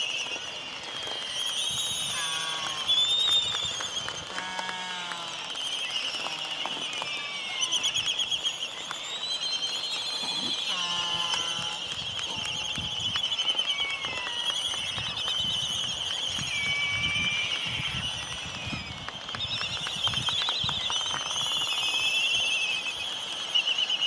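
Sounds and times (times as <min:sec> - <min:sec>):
birds trilling chorus: 0:10.0 - 0:14.1.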